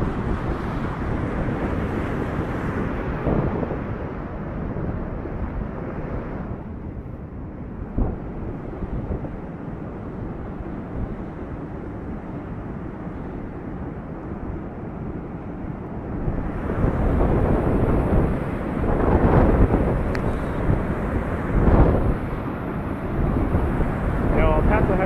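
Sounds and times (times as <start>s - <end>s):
wind buffeting microphone: 0.0s - 25.0s
rushing flood water: 16.2s - 25.0s.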